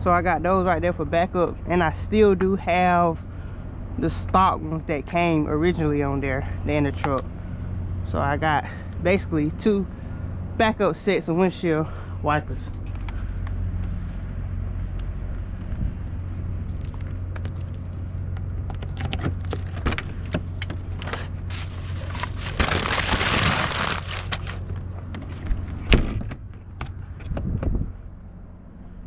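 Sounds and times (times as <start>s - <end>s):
diesel engine idling: 0.0s - 25.5s
rustling burst: 21.5s - 24.8s.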